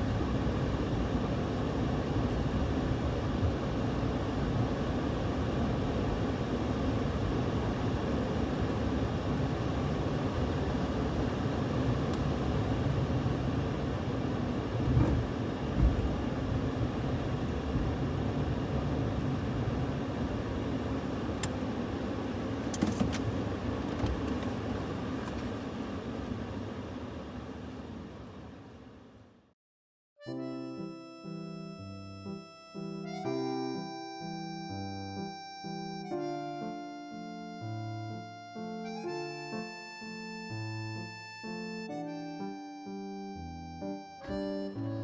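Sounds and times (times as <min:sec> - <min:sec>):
car road and engine noise: 0:00.0 - 0:29.5.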